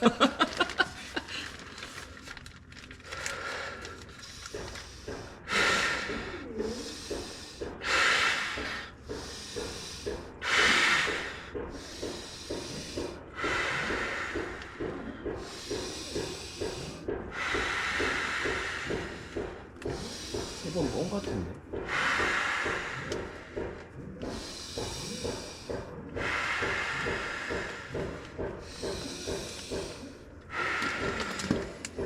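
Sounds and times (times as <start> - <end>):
man panting: 0.0 - 32.0
man blowing air into mat: 4.9 - 21.2.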